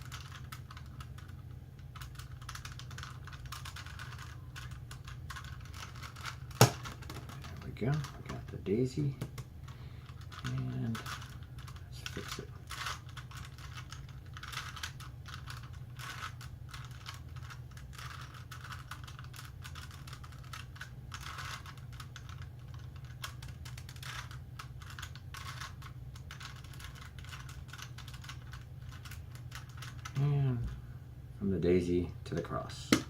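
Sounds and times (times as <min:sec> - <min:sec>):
plastic puzzle cube clicking: 0:00.0 - 0:08.1
steady low hum: 0:00.0 - 0:33.0.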